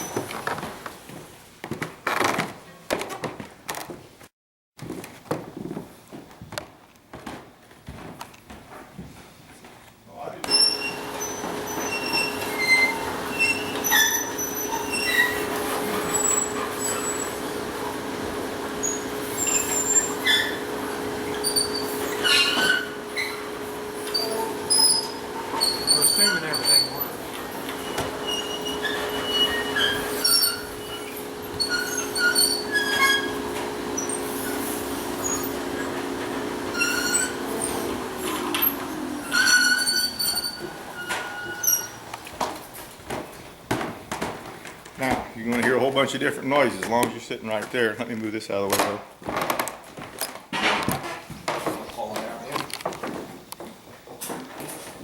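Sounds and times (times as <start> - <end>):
sawmill machinery hum: 10.4 - 43.0
high-pitched metal squeals: 10.5 - 36.0, 36.7 - 42.1.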